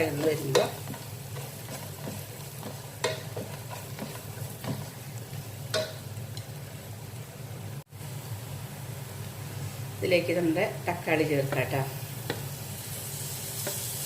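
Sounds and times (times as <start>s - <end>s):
spoon scraping a pan: 0.0s - 5.0s, 13.1s - 14.0s
light sizzle in a pan: 0.0s - 14.0s.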